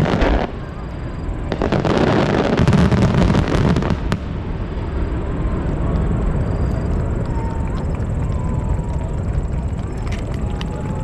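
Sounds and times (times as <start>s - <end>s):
sharp firework crack: 0.0s - 5.1s
fireworks crackling: 0.0s - 11.0s.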